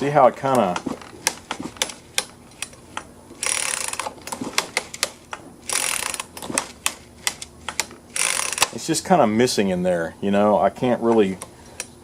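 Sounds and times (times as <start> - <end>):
starter rattling clicks: 0.5 - 8.8
chainsaw recoil starter rope pulls: 3.4 - 5.0, 5.6 - 8.8.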